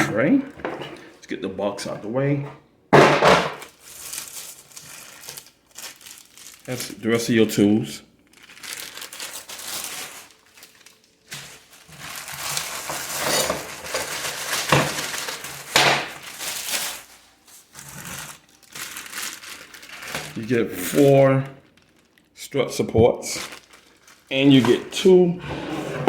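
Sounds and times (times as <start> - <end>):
packaging crinkling: 3.6 - 7.6, 8.2 - 25.1
hard plastic parts handled: 8.6 - 19.1.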